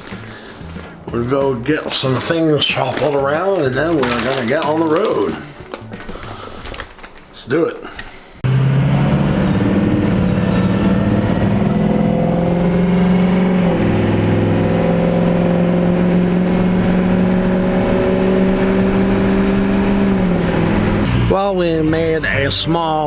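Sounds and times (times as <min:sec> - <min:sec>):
vehicle engine running: 0:08.4 - 0:23.0.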